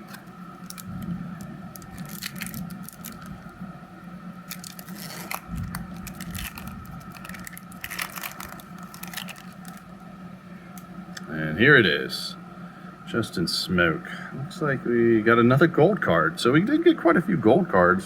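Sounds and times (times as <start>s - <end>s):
cards scraping: 0.0s - 3.4s, 4.5s - 9.9s
wrapper crinkling and tearing: 0.0s - 3.5s, 4.4s - 9.9s.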